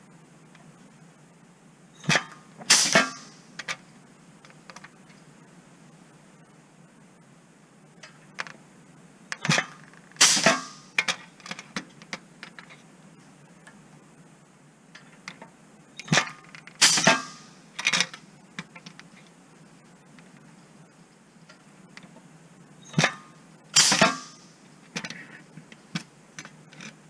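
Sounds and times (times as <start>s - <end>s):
loud ringing clank: 2.0s - 3.4s.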